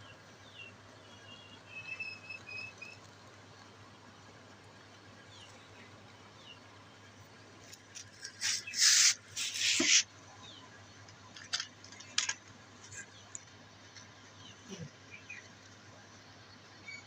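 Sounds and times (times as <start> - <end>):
scraping noise bursts: 8.0 - 10.1.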